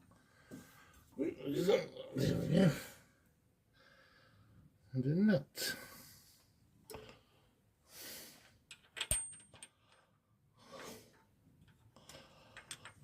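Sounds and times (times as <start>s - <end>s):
soft breaths: 0.1s - 1.2s, 2.8s - 4.8s, 5.6s - 8.7s, 11.9s - 13.0s
small metal clicks: 8.7s - 10.1s, 11.6s - 13.0s.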